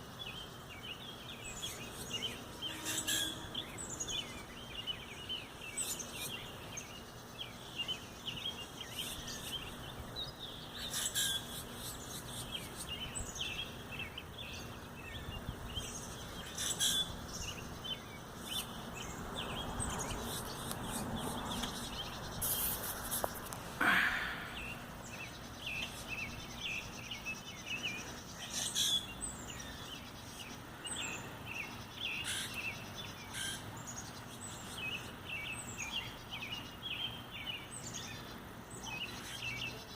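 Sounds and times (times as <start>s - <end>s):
small birds chirping: 0.0s - 39.9s
high bird calls: 0.2s - 39.9s.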